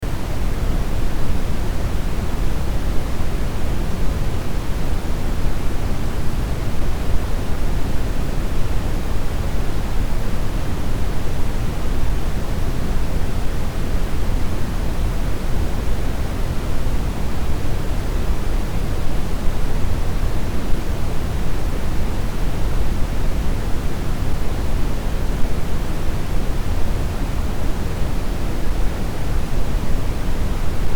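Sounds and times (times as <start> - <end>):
brown noise hiss: 0.0 - 30.9.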